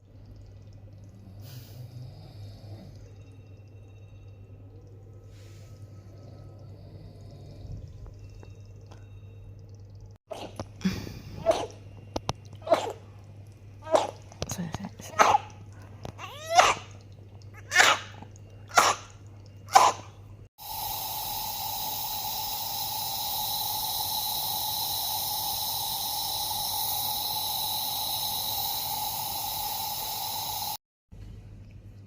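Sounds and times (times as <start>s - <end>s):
baby coughing: 12.6s - 13.0s, 13.9s - 14.2s, 15.1s - 15.5s, 16.3s - 16.9s, 17.6s - 18.1s, 18.7s - 19.0s, 19.7s - 20.1s
hiss with thin whining tone: 20.6s - 30.8s.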